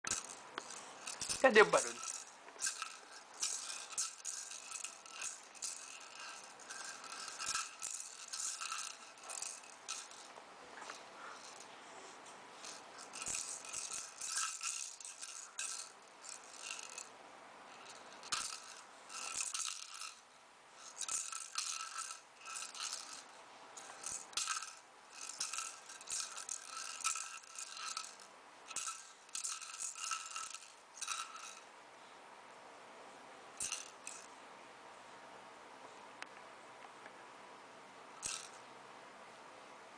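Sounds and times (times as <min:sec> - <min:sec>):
toy rattle shaking: 0:00.1 - 0:10.3, 0:11.3 - 0:11.6, 0:12.6 - 0:17.1, 0:17.7 - 0:20.2, 0:20.8 - 0:31.7, 0:33.6 - 0:34.3, 0:38.2 - 0:38.6.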